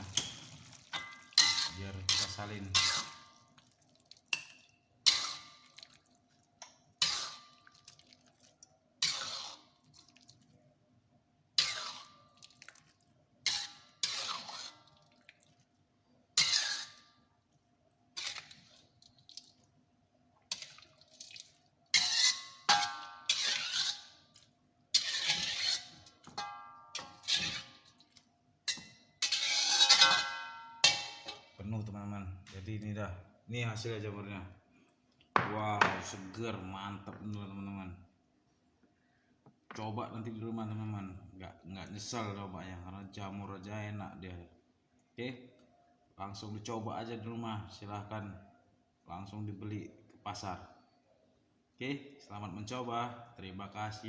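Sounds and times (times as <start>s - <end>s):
utensil scraping frying pan: 0.0s - 3.4s, 4.3s - 5.7s, 7.0s - 7.5s, 9.0s - 9.8s, 11.6s - 12.2s, 13.4s - 14.9s, 16.4s - 17.1s, 18.2s - 18.9s, 21.9s - 27.8s, 28.7s - 31.5s.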